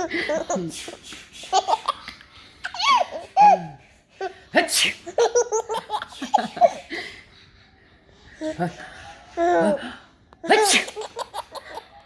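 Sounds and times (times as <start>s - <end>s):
baby laughing: 1.4s - 4.4s, 5.0s - 7.0s, 10.4s - 12.0s
person sneezing: 10.5s - 11.0s.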